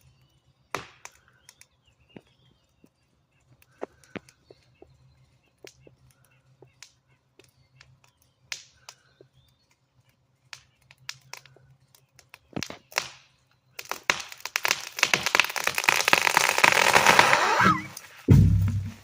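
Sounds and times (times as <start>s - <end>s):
tree wood cracking: 0.7s - 19.0s
falling tree crashing: 13.8s - 19.0s.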